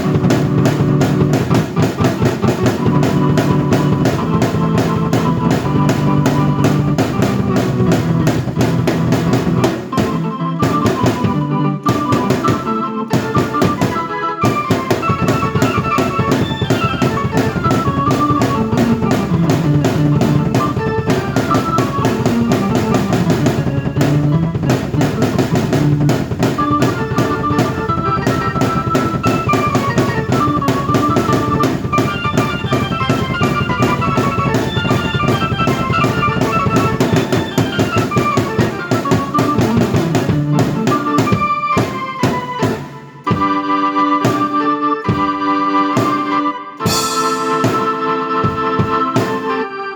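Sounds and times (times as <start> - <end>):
drum kit playing: 0.0 - 45.4, 46.0 - 49.7
keyboard melody: 0.0 - 49.9.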